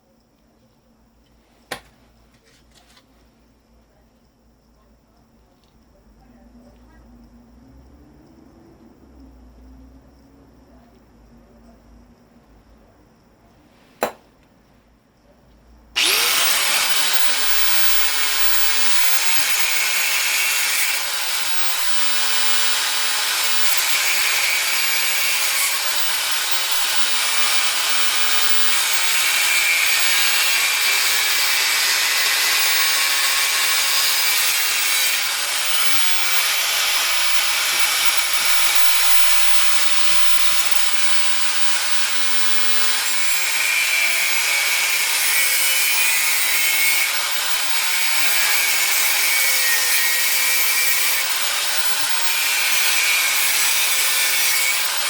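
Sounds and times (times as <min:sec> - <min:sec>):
angle grinder cutting metal: 0:16.0 - 0:55.0.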